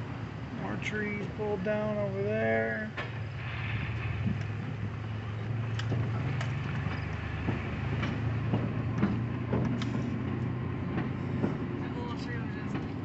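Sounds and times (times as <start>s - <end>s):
car engine and road hum: 0.0s - 13.0s
small knocks and rattles: 5.7s - 11.7s.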